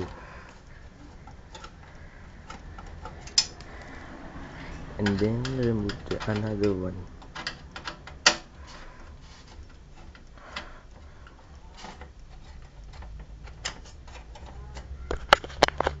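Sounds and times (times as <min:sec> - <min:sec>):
low steady hum: 0:00.0 - 0:16.0
screwdriver and metal parts clicking: 0:00.0 - 0:16.0.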